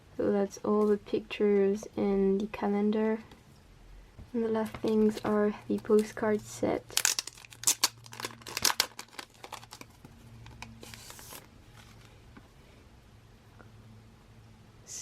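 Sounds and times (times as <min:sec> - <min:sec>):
faint steady hum: 0:00.0 - 0:15.0
packaging crinkling and rustling: 0:04.6 - 0:12.4.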